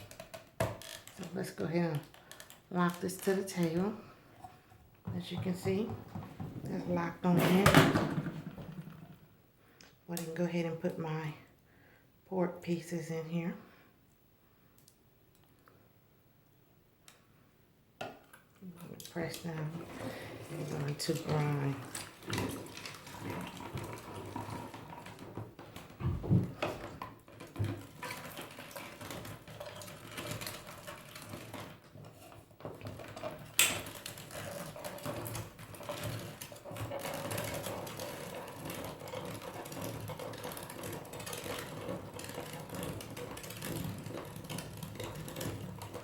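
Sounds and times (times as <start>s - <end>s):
meat grinder churning: 0.0s - 3.8s, 19.3s - 46.0s.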